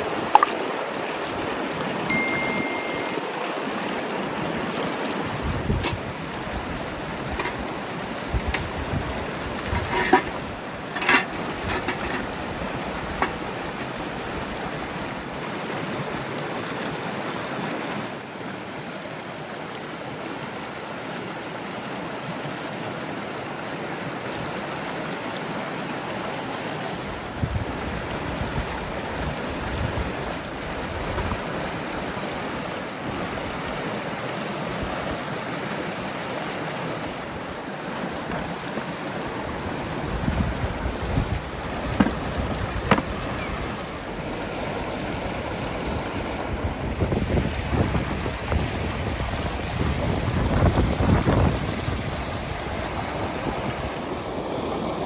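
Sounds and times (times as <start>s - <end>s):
river water rushing: 0.0s - 55.0s
sharp knocks: 38.3s - 38.9s, 41.9s - 43.3s.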